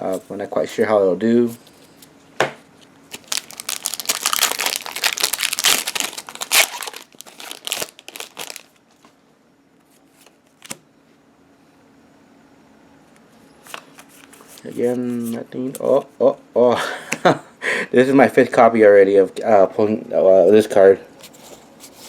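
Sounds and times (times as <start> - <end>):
foil wrapper crinkling and tearing: 3.1 - 8.8.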